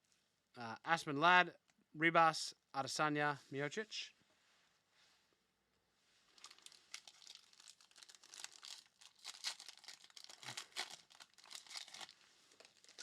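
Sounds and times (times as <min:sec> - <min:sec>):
foil wrapper crinkling and tearing: 0:06.4 - 0:13.0.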